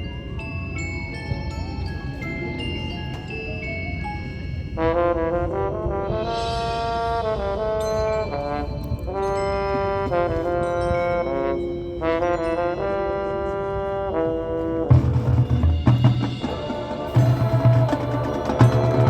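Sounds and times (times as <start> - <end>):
brass playing held chords: 4.8 - 19.0
heavy low drum beats: 14.9 - 19.0.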